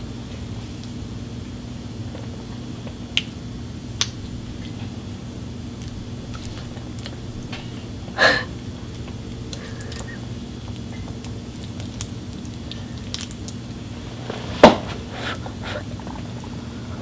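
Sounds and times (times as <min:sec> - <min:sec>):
steady low hum: 0:00.0 - 0:17.0
mouth clicks of chewing: 0:09.0 - 0:10.1.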